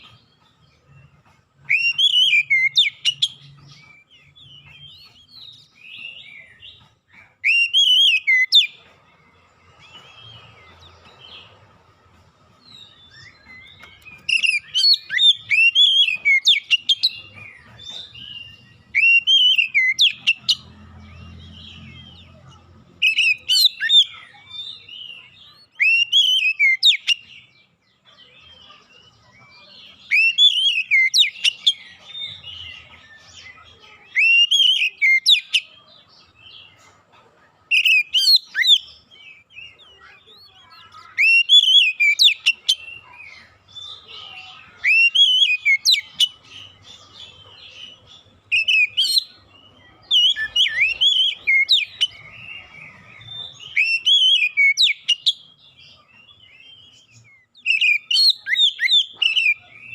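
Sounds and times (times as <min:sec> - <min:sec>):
bird song with whistles and clicks: 0:00.0 - 0:08.8, 0:12.6 - 0:20.6, 0:23.0 - 0:35.8, 0:37.7 - 0:59.9
bird twittering: 0:01.6 - 0:08.8, 0:37.7 - 0:59.9.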